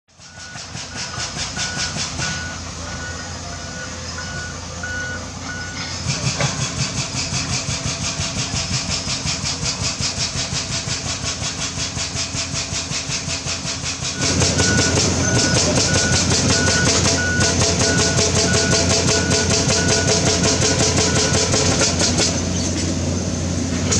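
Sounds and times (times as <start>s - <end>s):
heavy machinery pulsing: 0.2s - 23.9s
backup alarm beeping: 0.3s - 5.9s, 14.2s - 21.5s.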